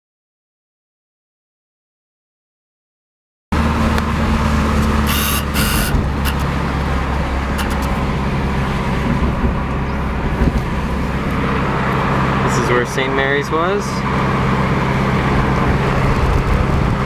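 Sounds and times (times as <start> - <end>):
car engine and road drone: 3.5 - 17.0.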